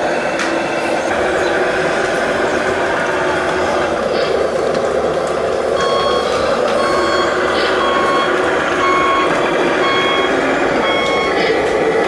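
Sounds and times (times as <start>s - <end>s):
steady mechanical hum: 0.0s - 12.0s
reversing beeper: 5.6s - 12.0s.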